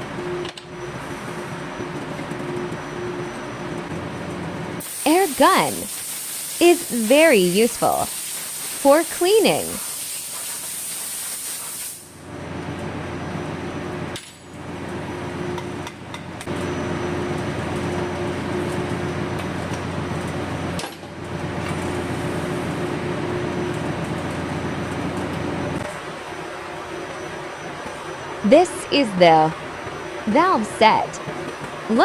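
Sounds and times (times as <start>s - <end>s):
machine noise with low hum: 0.0s - 32.0s
compressed-air blow gun hissing: 5.9s - 6.6s.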